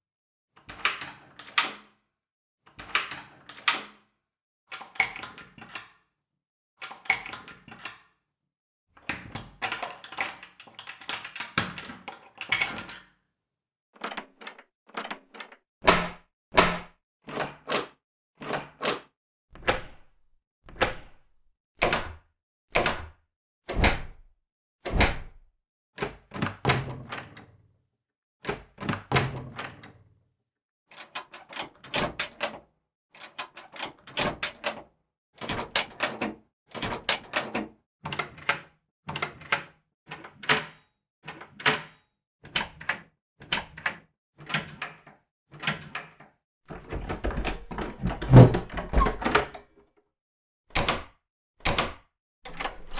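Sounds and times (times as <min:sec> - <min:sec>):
door knocks and thuds: 0:15.8 - 0:17.0, 0:22.8 - 0:24.2, 0:24.9 - 0:25.4, 0:46.7 - 0:49.7
latches clacking and rattling: 0:46.7 - 0:49.8, 0:52.5 - 0:52.9.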